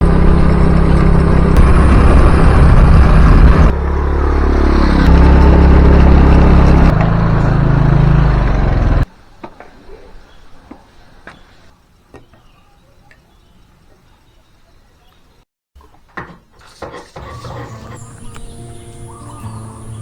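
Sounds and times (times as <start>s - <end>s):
vehicle engine running: 0.0s - 9.1s.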